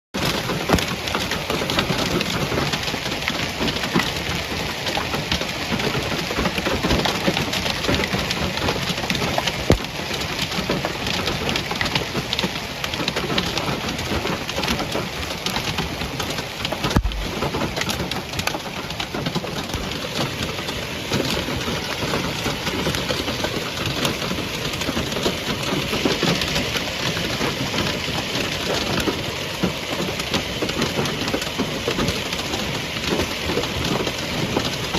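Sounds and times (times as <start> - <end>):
heavy hail falling: 0.2 - 34.9.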